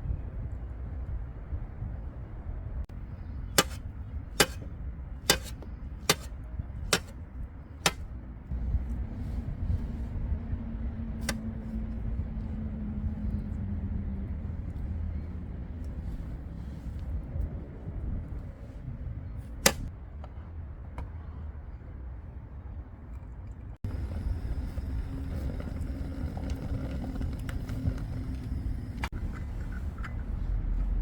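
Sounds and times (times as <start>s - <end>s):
steady low rumble: 0.0s - 19.9s.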